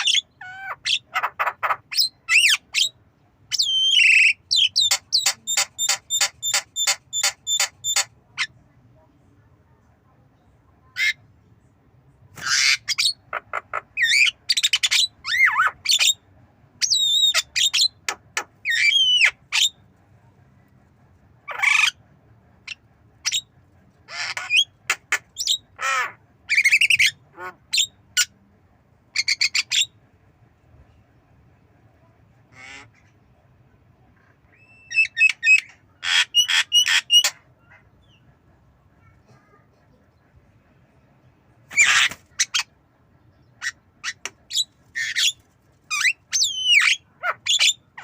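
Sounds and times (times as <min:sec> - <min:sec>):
myna bird squawking and whistling: 0:00.0 - 0:08.5, 0:12.4 - 0:16.2, 0:16.8 - 0:19.8, 0:34.5 - 0:37.4, 0:41.7 - 0:42.7, 0:43.6 - 0:48.0.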